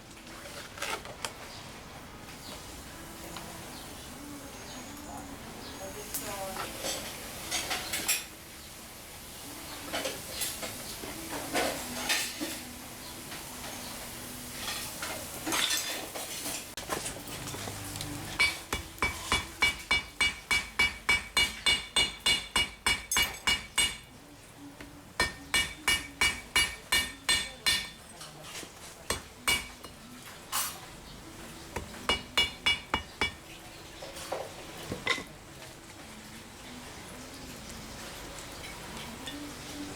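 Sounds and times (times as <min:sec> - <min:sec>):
hammer striking steel on anvil: 0:18.4 - 0:24.1, 0:25.2 - 0:28.0, 0:29.1 - 0:29.9, 0:32.1 - 0:33.4.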